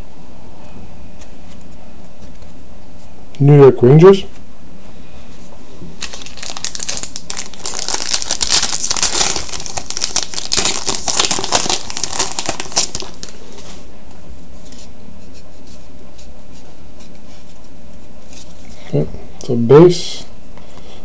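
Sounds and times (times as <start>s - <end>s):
wrapper tearing and crinkling: 6.0s - 13.7s.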